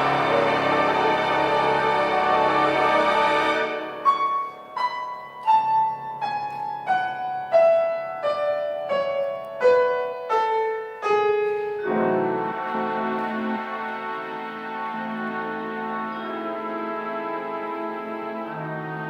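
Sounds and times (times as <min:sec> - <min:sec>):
slow solo piano: 0:03.8 - 0:14.1.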